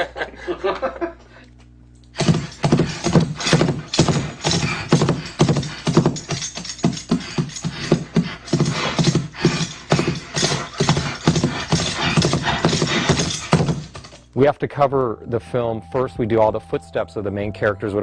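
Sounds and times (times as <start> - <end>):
horse snorts: 2.2 - 14.0
hoofbeats clip-clopping: 2.2 - 14.2
bridle jingling: 2.2 - 14.3.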